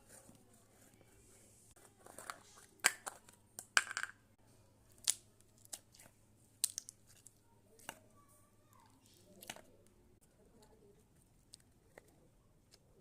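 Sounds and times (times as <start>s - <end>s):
slime popping and crackling: 4.9s - 8.0s.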